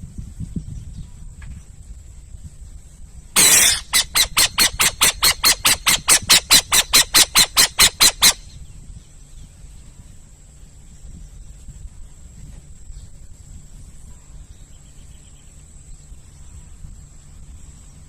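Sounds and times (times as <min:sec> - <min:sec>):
owl screeching: 0:03.4 - 0:08.5
owl rasping hissing notes: 0:03.4 - 0:08.6.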